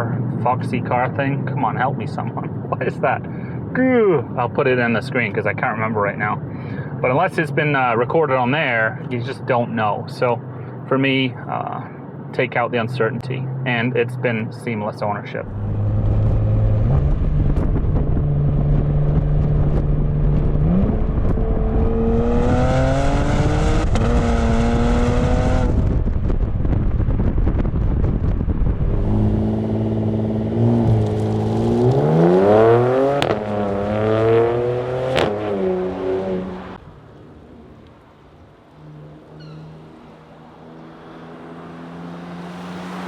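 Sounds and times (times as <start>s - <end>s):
car exhaust droning: 15.4s - 43.0s.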